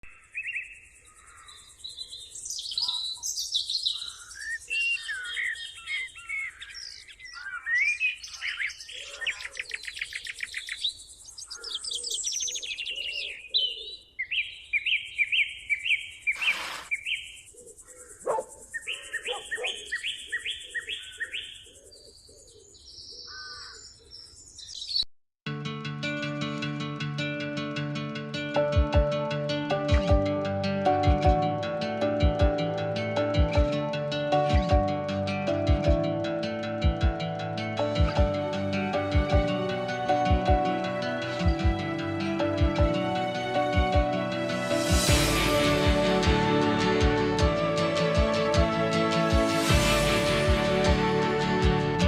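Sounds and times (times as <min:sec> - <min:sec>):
songbirds chirping and trilling: 0:00.1 - 0:25.1
high hiss of insects: 0:15.6 - 0:21.5.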